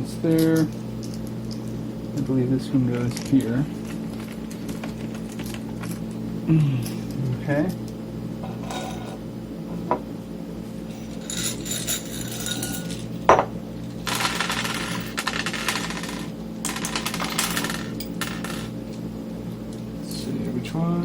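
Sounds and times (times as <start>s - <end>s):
metal parts scraping and clinking: 8.4s - 9.2s, 10.9s - 13.3s, 14.0s - 18.7s.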